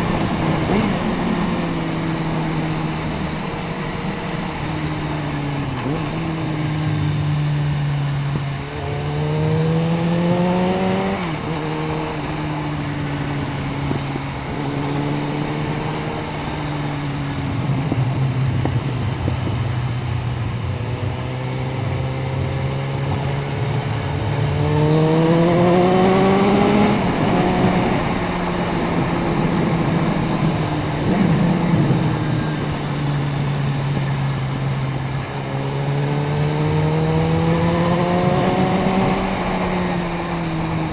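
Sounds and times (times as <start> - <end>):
motorcycle engine accelerating: 0.0 - 40.9
wind rush over microphone: 9.5 - 35.6, 36.6 - 40.9.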